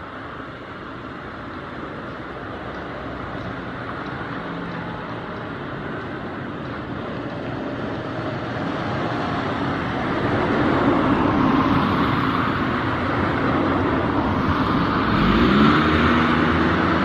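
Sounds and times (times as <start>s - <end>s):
motor vehicles passing: 0.0s - 17.0s
engine revving up: 14.4s - 17.0s.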